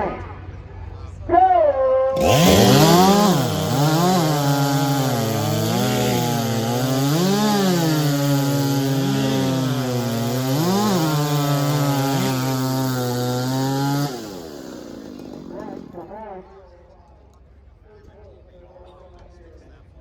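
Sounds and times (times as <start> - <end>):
chainsaws cutting through log: 2.2 - 16.2.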